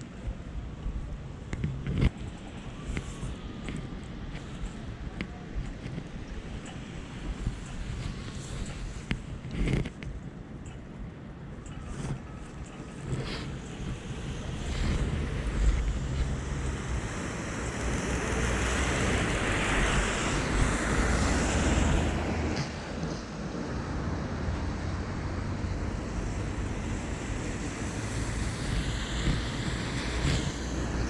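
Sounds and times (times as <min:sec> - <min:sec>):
tyres on wet pavement: 0:11.9 - 0:31.0.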